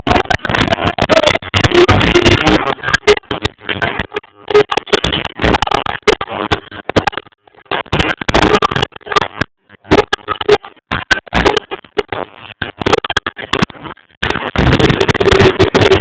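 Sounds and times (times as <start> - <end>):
distorted live reggae music: 0.0 - 7.1, 7.8 - 16.0.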